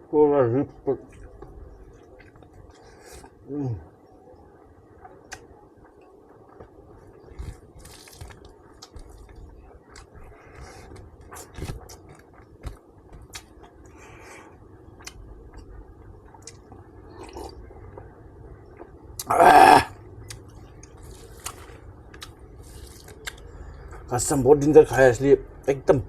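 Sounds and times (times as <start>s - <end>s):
close-up chewing: 5.0s - 14.1s, 20.2s - 23.5s.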